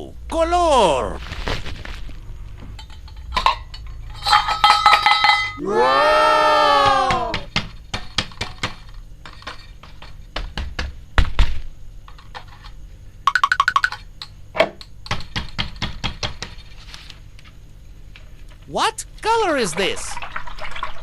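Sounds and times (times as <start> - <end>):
toys clicking and knocking: 12.1 - 16.6.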